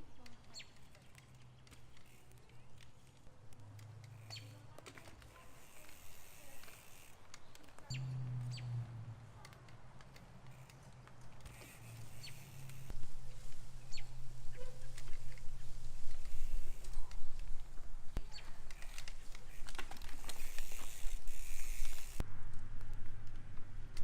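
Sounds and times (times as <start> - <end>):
faint outdoor background: 0.0 - 24.0
rough low rumble: 7.9 - 9.4.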